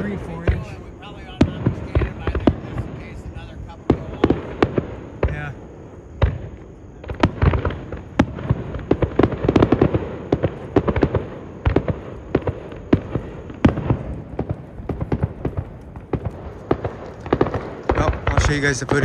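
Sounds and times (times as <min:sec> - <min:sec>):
fireworks bangs and crackles: 0:00.0 - 0:19.0.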